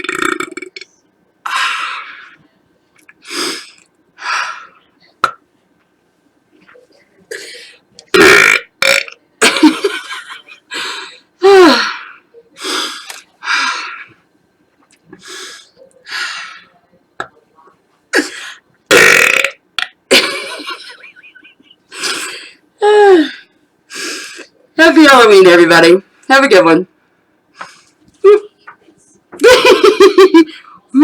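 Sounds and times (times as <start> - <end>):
woman burping: 0.0 - 0.8, 8.1 - 9.6, 18.9 - 19.6.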